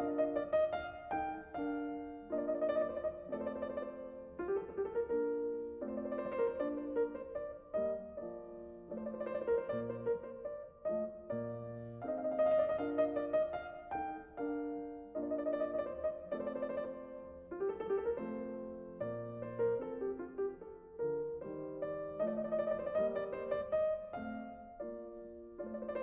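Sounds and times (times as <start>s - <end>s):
piano melody over chords: 0.0s - 26.0s.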